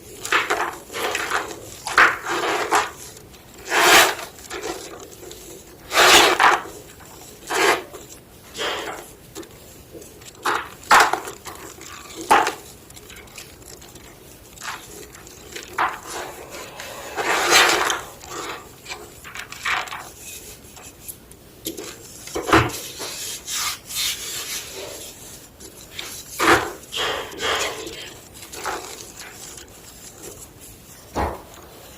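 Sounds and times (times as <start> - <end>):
chalk crunching and crumbling: 0.0 - 31.9.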